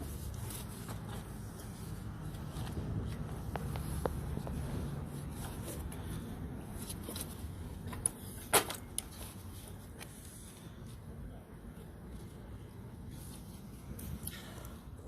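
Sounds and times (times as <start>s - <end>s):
parts rubbing and shuffling: 0.0s - 11.3s.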